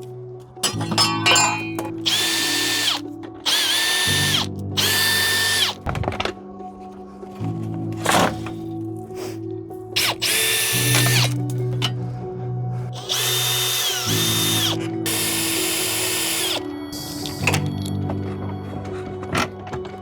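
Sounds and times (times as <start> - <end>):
power drill whining: 1.4 - 5.8, 10.0 - 11.4, 13.0 - 17.9.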